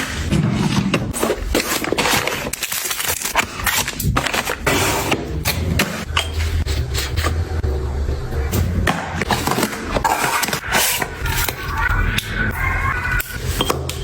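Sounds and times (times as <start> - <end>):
items clicking and knocking: 0.0 - 7.4, 8.6 - 11.7
scraping of items: 0.0 - 7.4, 8.5 - 11.9
low hum: 5.4 - 14.0.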